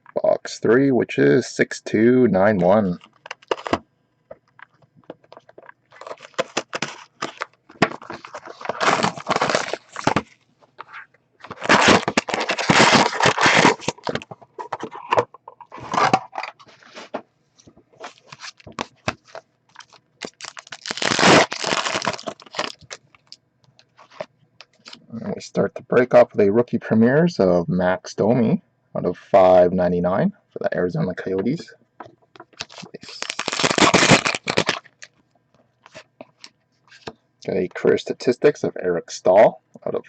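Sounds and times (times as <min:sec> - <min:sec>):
cardboard and cards rustling: 0:02.9 - 0:25.0, 0:32.4 - 0:35.1
foil wrapper crinkling and tearing: 0:03.2 - 0:03.8, 0:05.3 - 0:10.3, 0:10.9 - 0:14.2, 0:18.0 - 0:23.4, 0:32.5 - 0:35.1.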